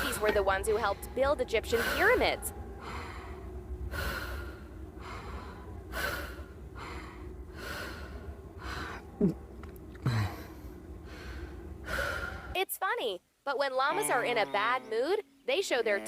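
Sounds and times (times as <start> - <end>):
donkey braying: 0.0 - 3.3.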